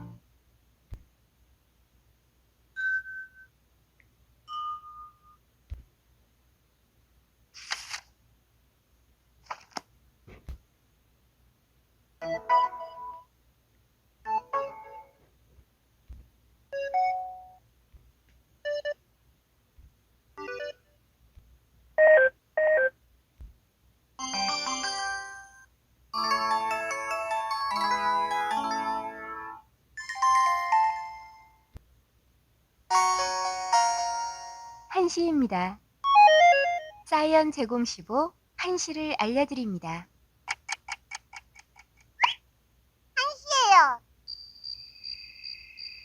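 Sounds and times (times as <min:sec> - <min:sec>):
melodic ringtone jingles: 0:30.0 - 0:31.6, 0:44.3 - 0:46.0.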